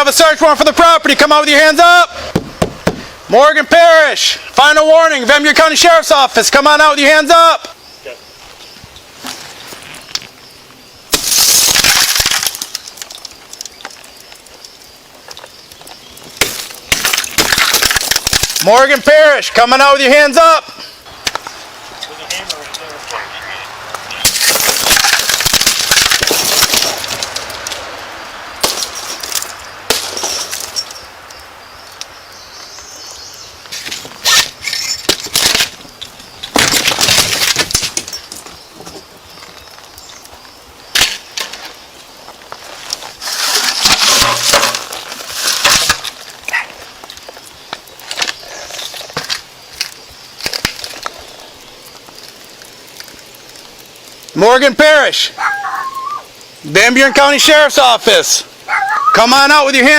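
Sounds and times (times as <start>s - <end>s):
irregular crunching: 8.4s - 19.7s, 20.7s - 54.4s
glass breaking and crashing: 11.1s - 14.1s, 16.4s - 19.0s, 24.1s - 27.8s, 28.6s - 31.1s, 33.8s - 38.5s, 43.2s - 46.4s, 48.1s - 51.2s.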